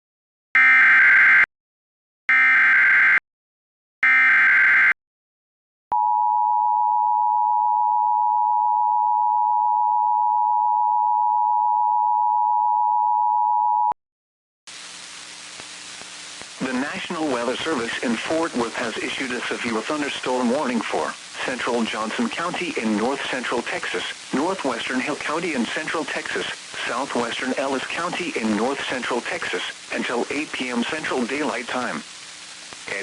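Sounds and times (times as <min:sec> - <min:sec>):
faint hiss: 0:14.7 - 0:33.0.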